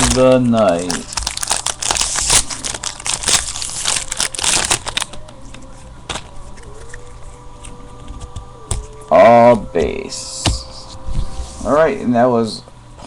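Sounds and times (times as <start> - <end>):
wrapper crinkling: 0.0 - 7.1.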